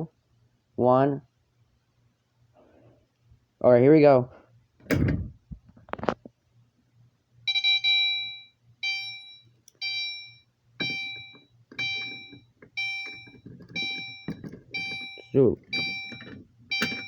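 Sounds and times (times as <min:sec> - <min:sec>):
fire alarm chime: 0:07.5 - 0:17.0
rattling: 0:10.8 - 0:17.0.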